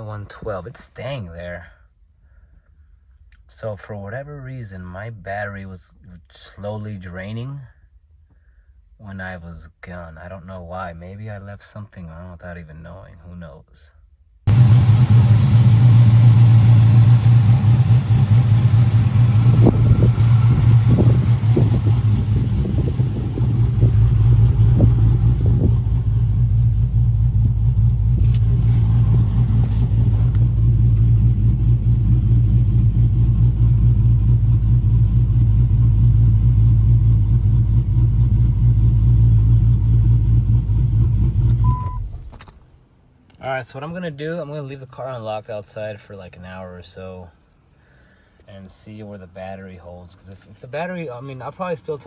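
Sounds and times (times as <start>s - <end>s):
car engine humming: 14.5s - 42.6s.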